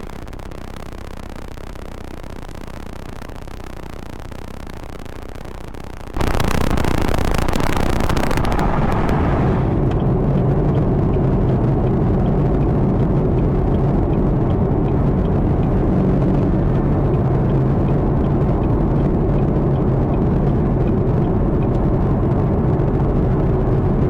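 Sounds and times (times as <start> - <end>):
car engine roaring: 6.1 - 24.0.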